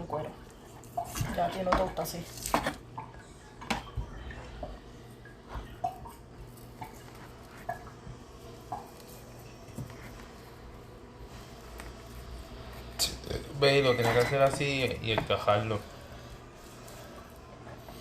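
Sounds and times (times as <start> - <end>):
low steady hum: 0.0 - 18.0
clinks of utensils and dishes: 13.8 - 15.3.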